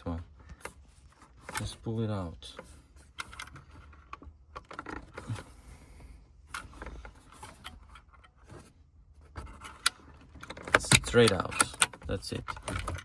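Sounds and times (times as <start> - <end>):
plastic scraping and clicking: 6.5 - 13.0.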